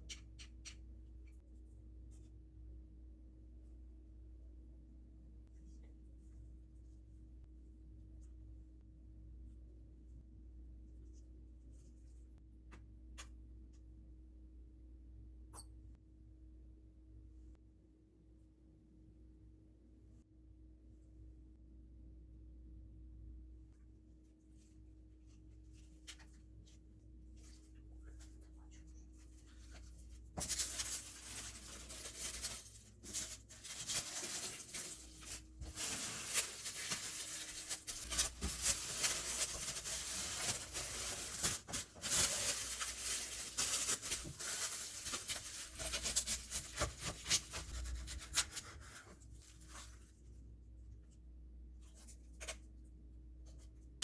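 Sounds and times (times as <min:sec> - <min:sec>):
paper rubbing and rustling: 0:27.4 - 0:50.1.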